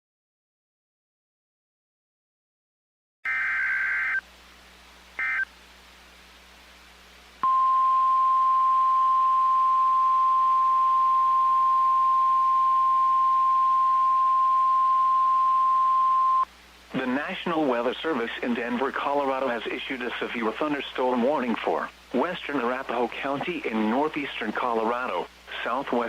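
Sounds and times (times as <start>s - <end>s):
steady warning alarm tone: 5.2s - 5.5s.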